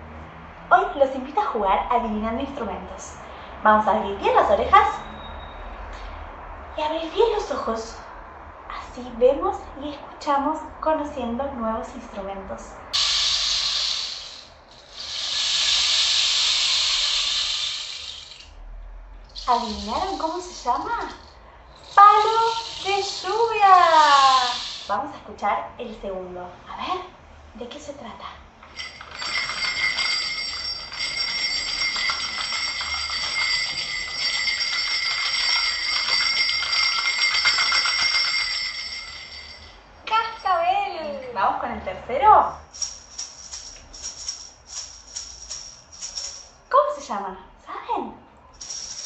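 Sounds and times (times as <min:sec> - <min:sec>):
rain stick trickling: 0:19.3 - 0:23.4
jingle bells shaken: 0:19.3 - 0:24.9, 0:28.6 - 0:40.6, 0:42.6 - 0:46.6, 0:48.6 - 0:49.0.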